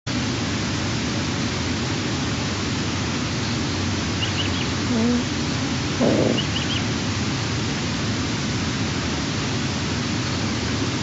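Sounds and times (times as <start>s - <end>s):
microphone hiss: 0.1s - 11.0s
faint high bird chirps: 6.0s - 6.8s
short low bird call: 6.0s - 6.8s.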